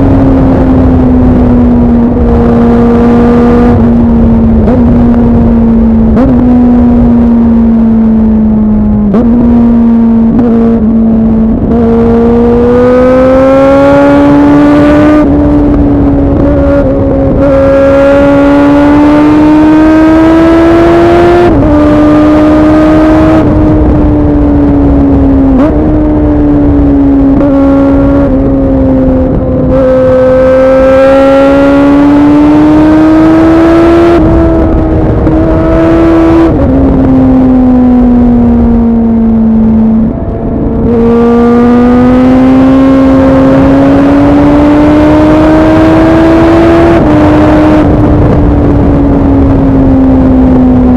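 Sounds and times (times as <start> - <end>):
motorcycle engine revving: 0.0 - 50.9.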